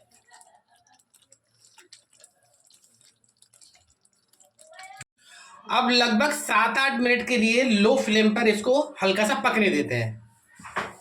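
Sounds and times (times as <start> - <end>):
gravy ticking and popping in pan: 0.0 - 5.1.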